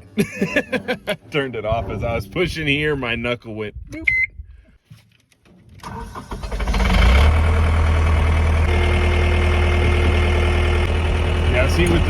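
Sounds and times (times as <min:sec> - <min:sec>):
diesel engine starting and idling: 0:05.8 - 0:12.0.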